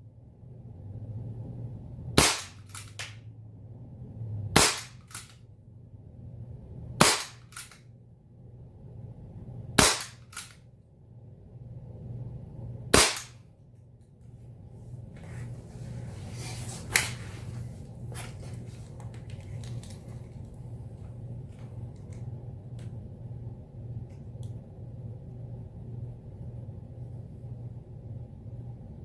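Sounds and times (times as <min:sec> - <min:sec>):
air pistol shots: 0:02.2 - 0:03.2, 0:04.6 - 0:05.4, 0:07.0 - 0:07.8, 0:09.8 - 0:10.6, 0:12.9 - 0:13.4.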